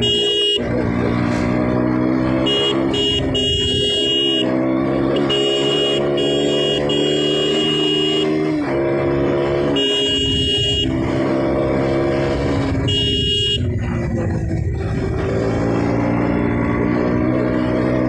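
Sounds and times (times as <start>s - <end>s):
high beeping horn: 0.0s - 0.8s, 2.0s - 8.6s, 9.4s - 11.5s, 12.7s - 13.8s
motorcycle engine shifting gears: 0.0s - 18.0s.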